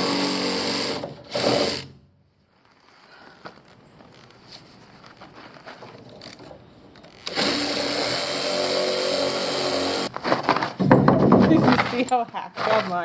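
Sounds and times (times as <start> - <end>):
power tool cutting concrete: 0.0 - 1.7, 7.3 - 10.1.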